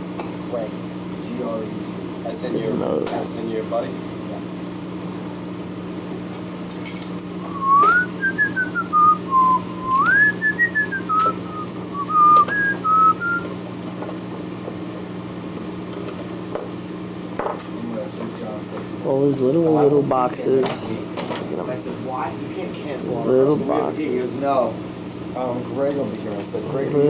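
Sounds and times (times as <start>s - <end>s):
steady low hum: 0.0s - 13.6s
person whistling a tune: 7.4s - 13.5s.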